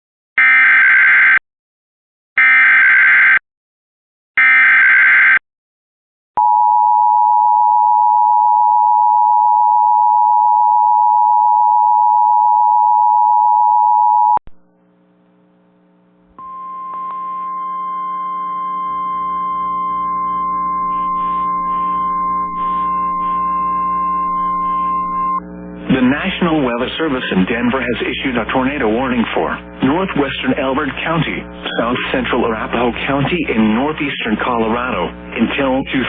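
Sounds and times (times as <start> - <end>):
steady attention tone: 6.4 - 33.4
faint hum: 14.5 - 36.0
chord of sustained tones: 16.4 - 25.4
warbling digital data bursts: 18.9 - 25.4.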